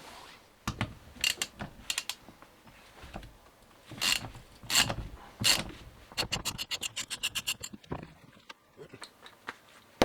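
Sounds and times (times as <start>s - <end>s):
metallic rasps and clicks: 6.2s - 7.8s.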